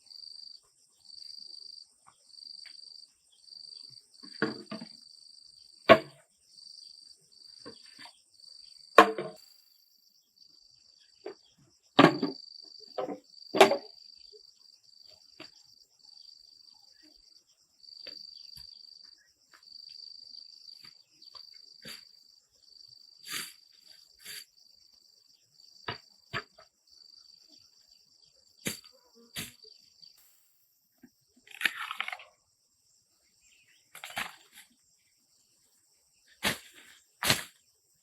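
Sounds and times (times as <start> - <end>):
insects trilling: 0.0 - 38.0
sharp knocks and thuds: 5.9 - 6.2, 9.0 - 9.4, 12.0 - 12.4, 25.8 - 26.7, 28.6 - 29.6, 36.4 - 37.6.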